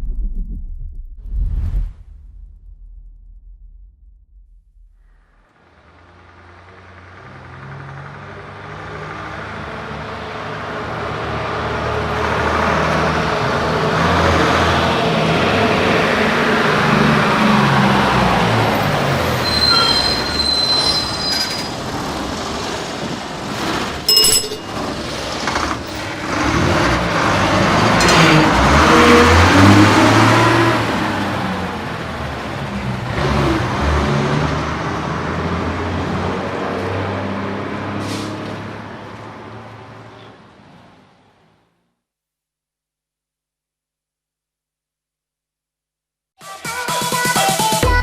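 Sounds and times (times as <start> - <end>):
bus driving past: 5.3 - 41.9
brake squeals: 18.1 - 30.8, 39.9 - 41.0.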